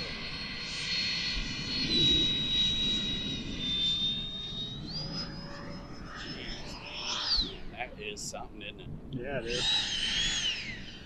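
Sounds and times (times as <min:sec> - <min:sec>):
electric ducted fan whining: 0:00.0 - 0:11.0
wind rumbling on microphone: 0:00.0 - 0:11.0.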